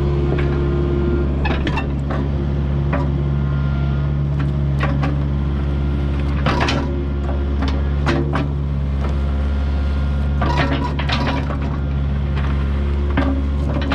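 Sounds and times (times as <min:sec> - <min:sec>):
excavator diesel engine running: 0:00.0 - 0:13.9.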